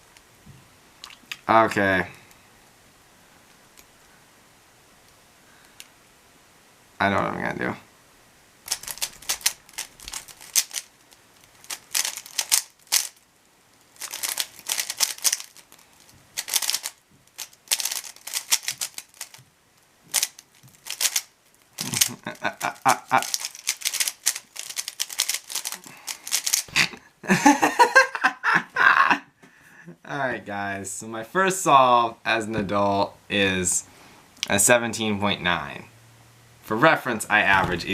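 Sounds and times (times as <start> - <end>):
plastic puzzle cube clicking: 8.7 - 10.9, 11.6 - 13.2, 14.0 - 15.7, 16.4 - 19.4, 20.1 - 22.1, 23.2 - 26.7.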